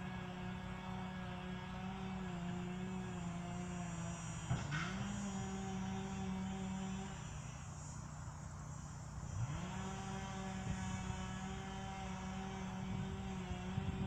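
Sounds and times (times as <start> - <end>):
distant small engine revving: 9.2 - 14.0.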